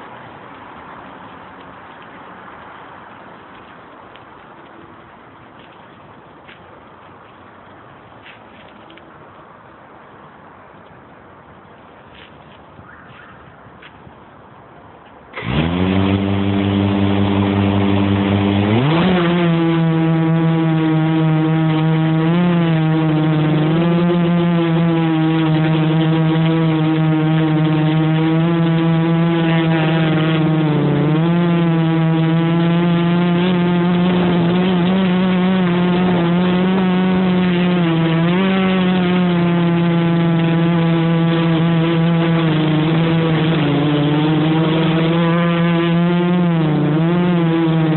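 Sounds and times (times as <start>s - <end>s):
quadcopter motors buzzing: 15.4s - 47.9s.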